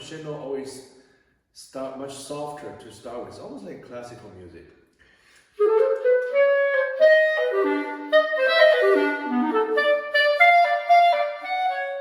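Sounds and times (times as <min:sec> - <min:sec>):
clarinet playing fast: 0:05.6 - 0:12.0.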